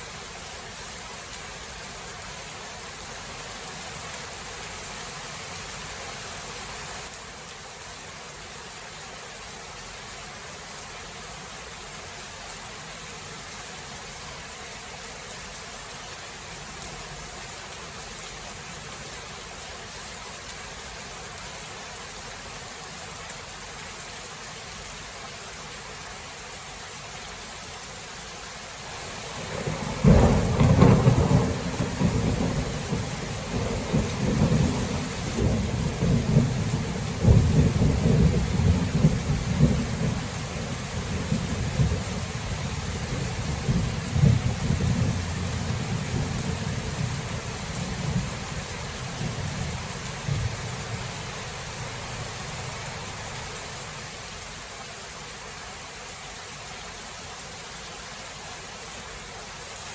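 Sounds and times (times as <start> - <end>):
steady rain hiss: 0.0 - 59.9
low rumble of thunder: 29.1 - 52.3.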